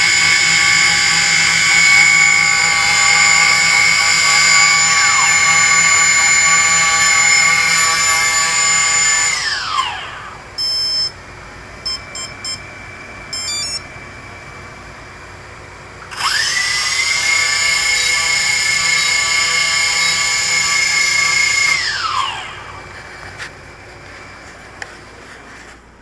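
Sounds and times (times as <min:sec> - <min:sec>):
quadcopter motors whining: 0:00.0 - 0:23.6
short electronic beeps: 0:10.6 - 0:11.2, 0:11.8 - 0:12.7, 0:13.3 - 0:13.9.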